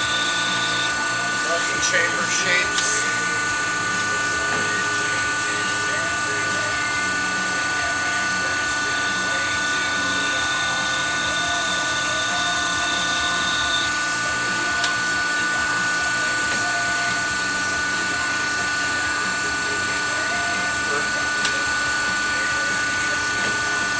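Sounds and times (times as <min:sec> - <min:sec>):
lathe running with high whine: 0:00.0 - 0:23.9
sharp click: 0:14.7 - 0:15.7.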